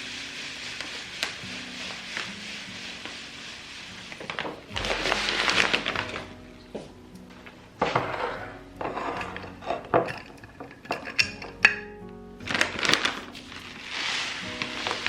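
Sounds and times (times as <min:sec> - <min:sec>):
groceries rustling: 0:00.0 - 0:11.7, 0:12.4 - 0:15.0
soft background music: 0:00.0 - 0:15.0
items knocking and clinking: 0:04.7 - 0:06.9, 0:07.8 - 0:13.3.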